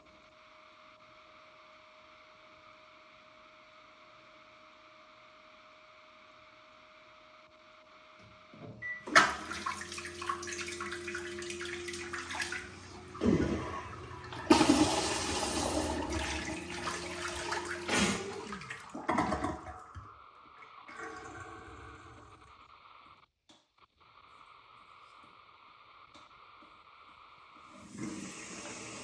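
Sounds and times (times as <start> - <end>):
toilet flushing: 8.8 - 22.5, 27.6 - 29.0
low hum: 8.8 - 22.6
toilet tank refilling: 9.0 - 20.2, 20.9 - 22.4, 27.7 - 29.0.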